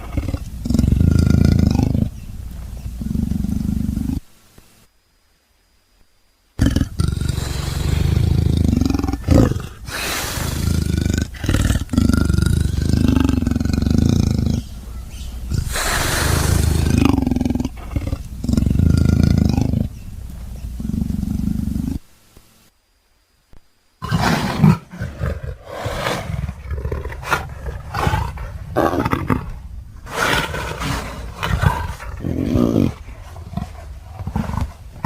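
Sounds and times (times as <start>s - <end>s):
creature snarls and growls: 6.6s - 14.6s, 15.5s - 19.9s, 24.0s - 35.0s.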